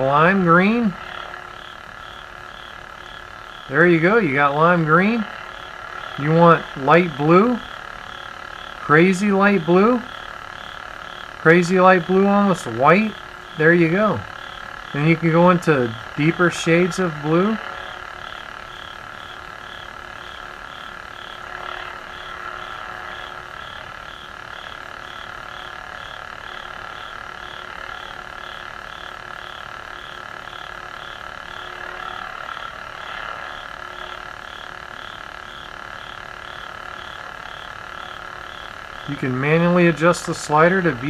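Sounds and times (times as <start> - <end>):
lightsaber blade hum: 3.7 - 7.8.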